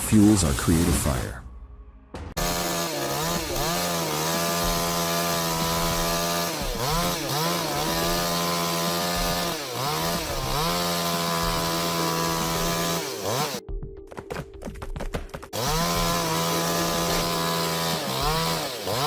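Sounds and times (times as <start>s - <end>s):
chainsaw at high revs: 2.4s - 13.6s, 15.6s - 19.0s.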